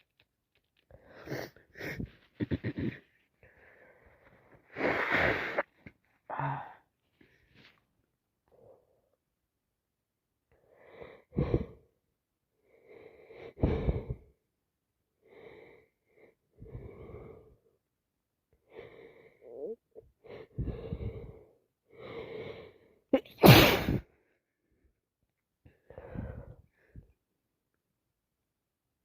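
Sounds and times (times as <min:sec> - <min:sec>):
breathy in-breaths: 0:06.3 - 0:07.4, 0:10.6 - 0:11.9, 0:18.6 - 0:23.0, 0:25.7 - 0:27.2
person sneezing: 0:23.2 - 0:24.0.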